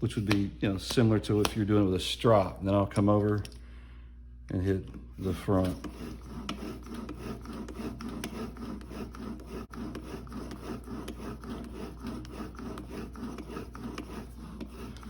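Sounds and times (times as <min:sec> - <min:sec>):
blade rubbing on cardboard: 0:05.2 - 0:15.0.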